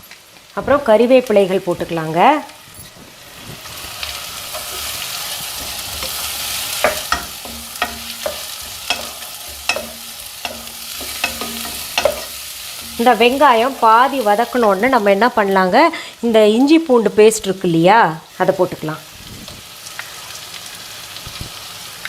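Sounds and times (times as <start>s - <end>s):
food sizzling in hot oil: 0.0s - 22.0s
spatula knocking against pan: 6.8s - 13.0s.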